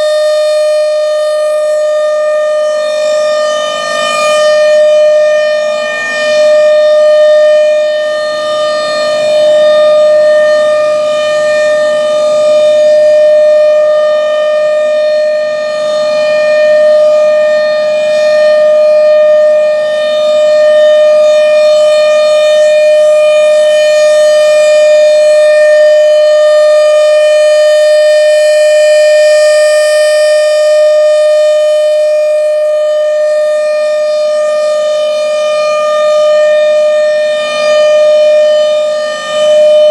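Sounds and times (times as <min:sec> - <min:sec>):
outdoor warning siren: 0:00.0 - 0:39.9.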